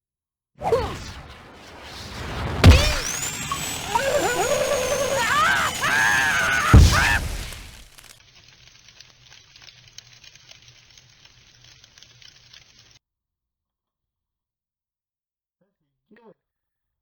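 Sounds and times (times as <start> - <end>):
squeaky cartoon character vocalizations: 2.6 - 7.8
cartoon sound effects: 2.6 - 8.0.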